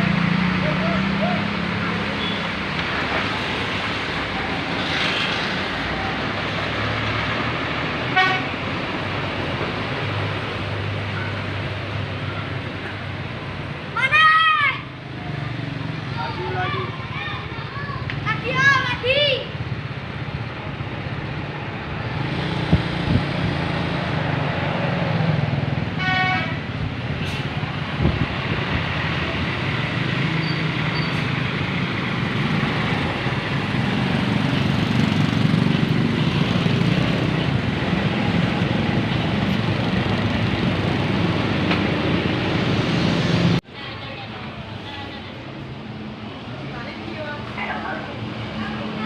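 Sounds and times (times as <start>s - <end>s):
bus engine running: 0.0s - 4.8s, 14.9s - 49.0s
road traffic: 0.0s - 49.0s.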